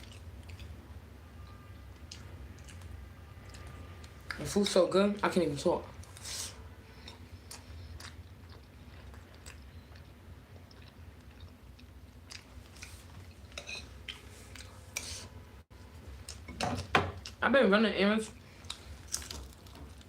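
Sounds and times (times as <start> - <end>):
person chewing food: 0.0 - 4.6, 6.9 - 15.3, 18.5 - 20.0.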